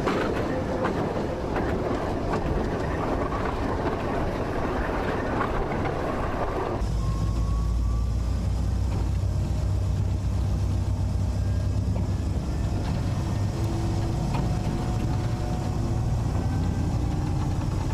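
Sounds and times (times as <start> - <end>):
train rattling: 0.0 - 17.9
diesel engine idling hum: 6.8 - 17.9.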